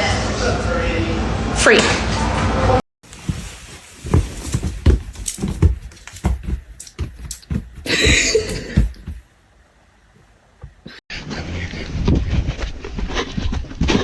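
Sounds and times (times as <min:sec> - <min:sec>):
irregular thumps and knocks: 0:03.0 - 0:09.2.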